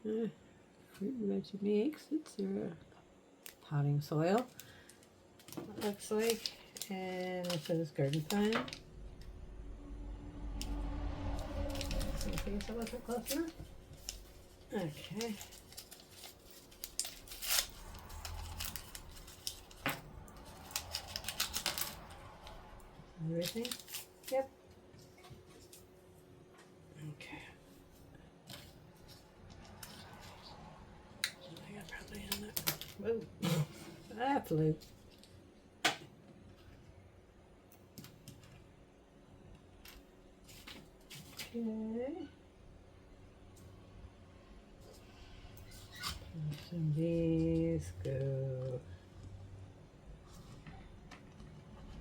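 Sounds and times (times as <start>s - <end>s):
packaging rustling: 4.5s - 8.8s, 11.6s - 22.6s, 23.4s - 24.5s.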